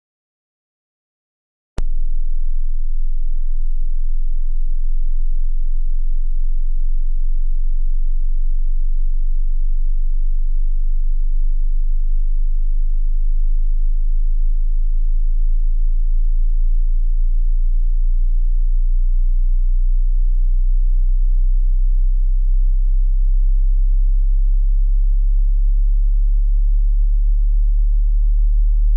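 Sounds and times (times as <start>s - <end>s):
low-pitched sine tone: 1.8s - 28.9s
click: 16.7s - 16.9s.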